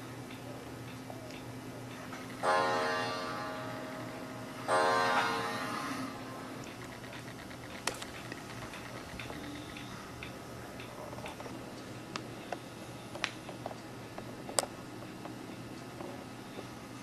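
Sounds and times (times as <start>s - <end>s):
low steady hum: 0.0s - 17.0s
light clicks and ticks: 6.6s - 16.2s.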